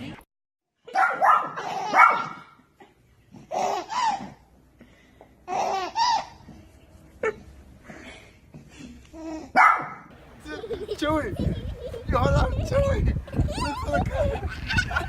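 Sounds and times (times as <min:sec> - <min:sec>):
baby laughing: 0:01.5 - 0:02.4, 0:03.4 - 0:04.4, 0:05.5 - 0:06.4, 0:10.5 - 0:15.0.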